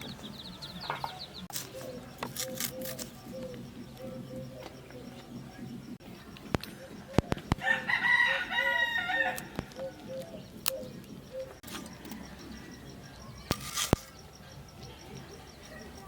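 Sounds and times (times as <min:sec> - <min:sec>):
sharp clicks: 0:06.4 - 0:07.6, 0:09.3 - 0:12.2
rooster crowing: 0:07.6 - 0:09.6.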